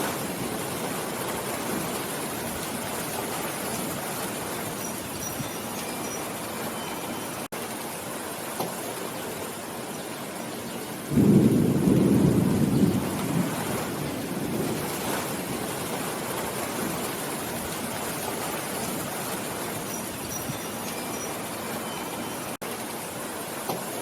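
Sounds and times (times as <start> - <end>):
thunder rumble: 0.0 - 5.2, 11.0 - 19.9
steady rain falling: 0.0 - 24.0.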